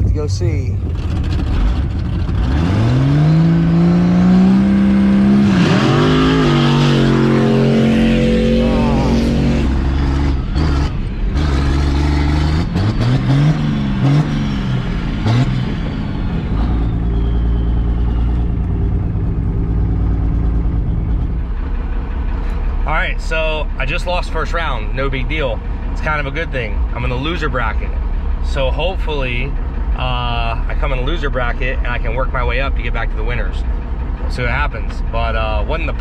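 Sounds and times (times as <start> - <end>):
diesel truck engine revving: 0.0 - 34.6
faint high whistle: 16.6 - 18.9.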